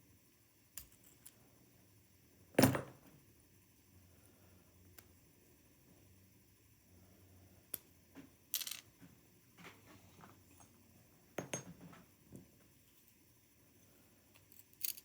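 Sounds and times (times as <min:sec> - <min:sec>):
metal parts clicking and scraping: 0:08.6 - 0:08.8, 0:14.4 - 0:15.0.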